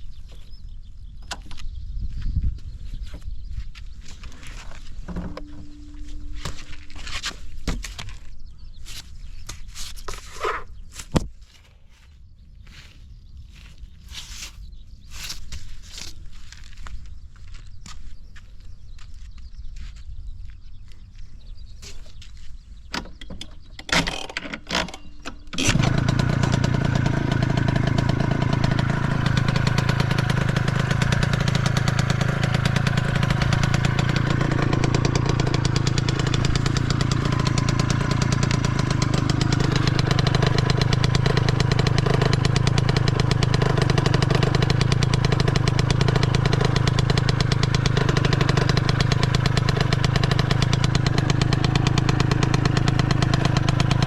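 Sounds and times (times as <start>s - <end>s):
scooter engine knocks: 5.1s - 6.7s
scooter engine idling: 5.1s - 8.1s, 25.1s - 54.0s.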